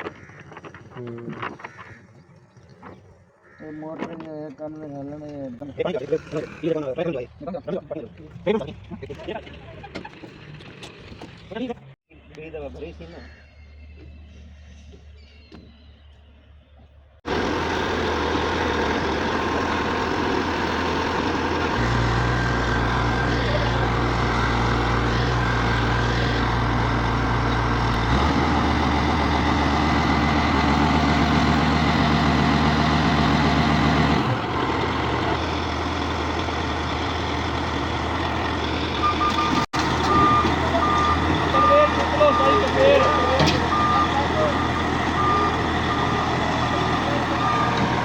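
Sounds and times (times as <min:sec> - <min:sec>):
cutting and conveyor noise: 0:17.3 - 0:48.0
road milling machine diesel drone: 0:17.3 - 0:48.0.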